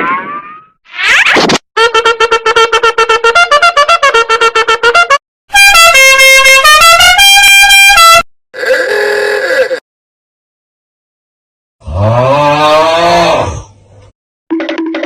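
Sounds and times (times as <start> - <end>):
horn-like tune: 1.8 - 8.3.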